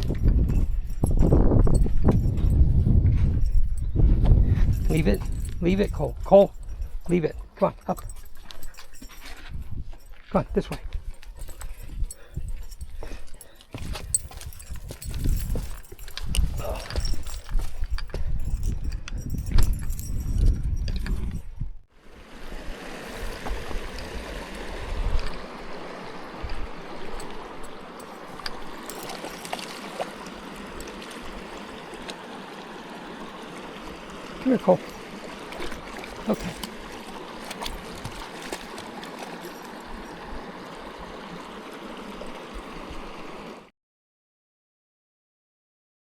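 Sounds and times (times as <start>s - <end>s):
river water flowing over stones: 22.0s - 43.7s.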